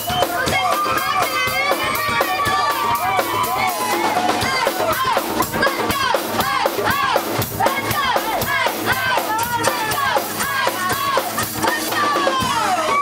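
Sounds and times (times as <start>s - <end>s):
driving drum beat: 0.0s - 13.0s.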